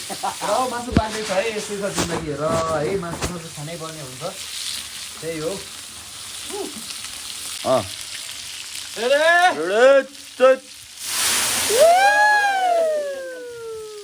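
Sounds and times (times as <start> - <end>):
crackling hiss: 0.0 - 14.0
people shouting: 11.7 - 14.0.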